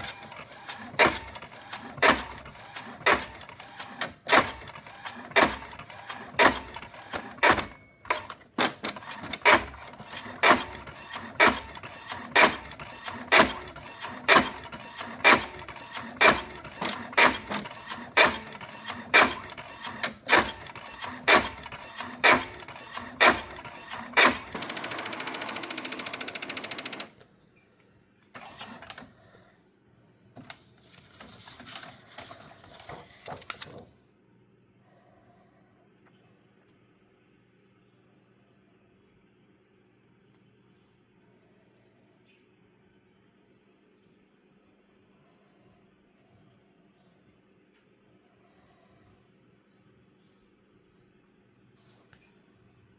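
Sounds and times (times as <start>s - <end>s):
inkjet printer printing: 0.0s - 27.2s, 28.4s - 29.1s, 30.4s - 33.8s
printer whirring: 0.0s - 27.2s, 28.3s - 29.1s
sharp loud printer click: 0.0s - 27.2s.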